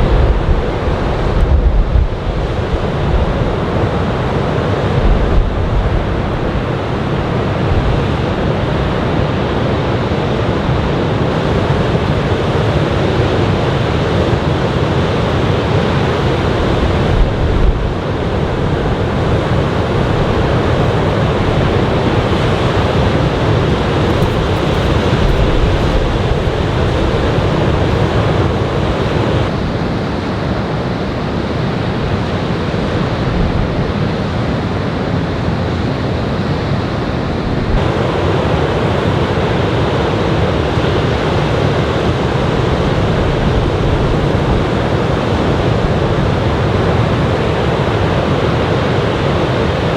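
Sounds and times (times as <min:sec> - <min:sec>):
ocean waves breaking: 0:00.0 - 0:33.4
wind buffeting microphone: 0:00.0 - 0:35.6.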